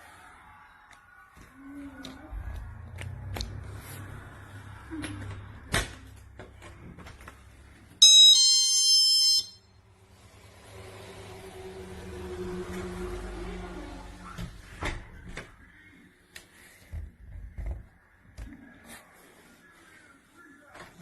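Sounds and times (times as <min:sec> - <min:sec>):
loud electronic alarm beep: 0:08.0 - 0:09.7.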